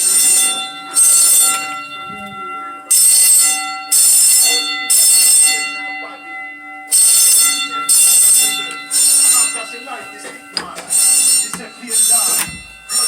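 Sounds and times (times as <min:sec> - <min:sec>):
fire alarm blasts: 0:00.0 - 0:13.0.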